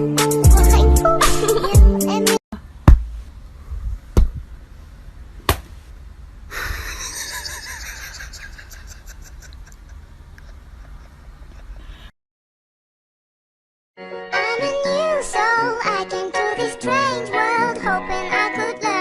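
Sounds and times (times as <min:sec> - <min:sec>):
sharp knocks: 0:02.8 - 0:03.2.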